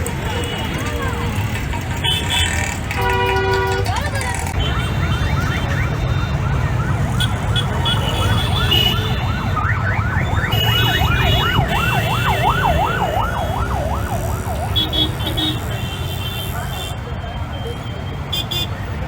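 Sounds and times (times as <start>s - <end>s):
traffic rumble: 0.0s - 19.0s
emergency vehicle siren: 4.6s - 19.0s.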